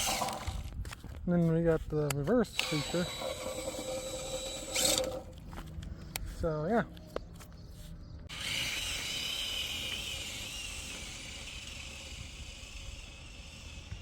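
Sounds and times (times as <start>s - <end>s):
drill motor whine: 0.0s - 0.7s, 2.6s - 5.3s, 8.3s - 14.0s.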